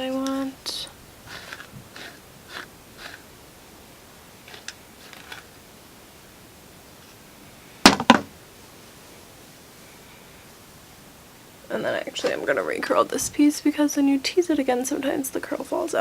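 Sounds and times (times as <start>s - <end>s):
comb scratching hair: 0.2s - 3.3s, 4.4s - 5.6s.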